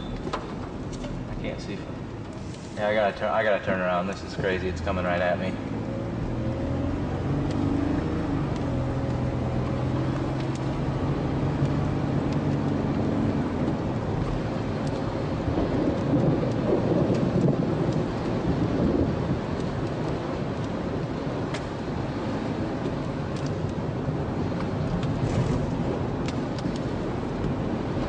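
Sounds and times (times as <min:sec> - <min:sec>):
heavy rain on car: 0:08.2 - 0:28.0.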